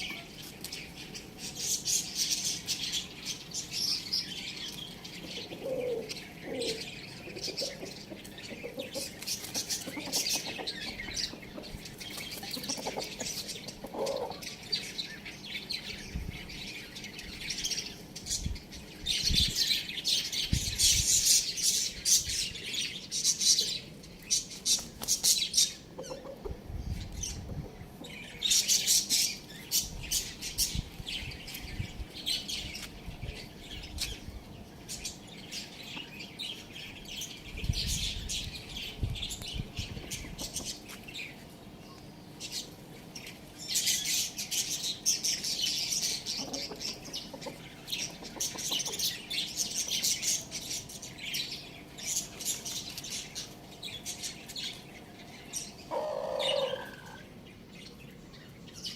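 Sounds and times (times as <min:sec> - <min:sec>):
small birds chirping: 0:00.0 - 0:58.9
lower bird calls: 0:44.0 - 0:57.7.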